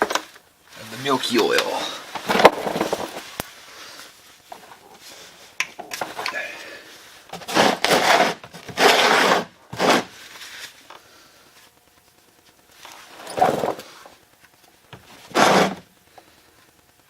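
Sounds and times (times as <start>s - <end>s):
rasping scraping handling noises: 2.1s - 10.9s.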